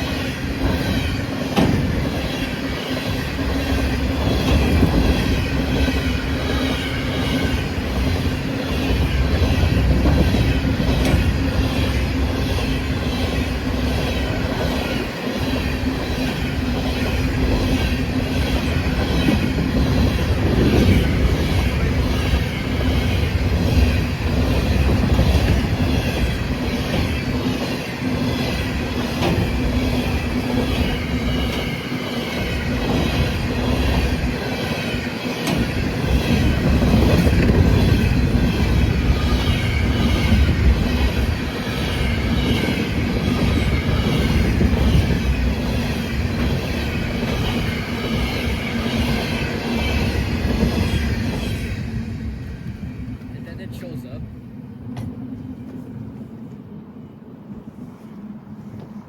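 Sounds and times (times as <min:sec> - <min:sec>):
train rumbling by: 0:00.0 - 0:59.0
train wheel clicks: 0:09.3 - 0:11.9.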